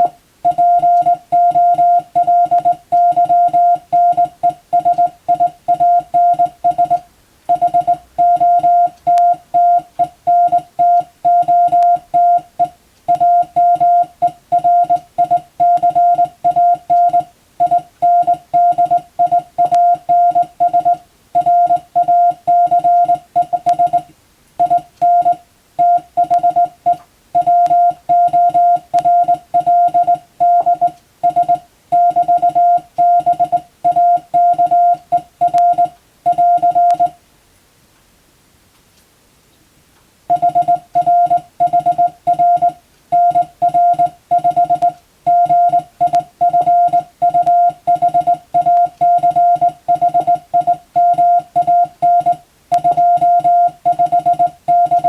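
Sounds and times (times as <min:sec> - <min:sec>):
morse code beeps: 0:00.0 - 0:37.2, 0:40.3 - 0:55.0.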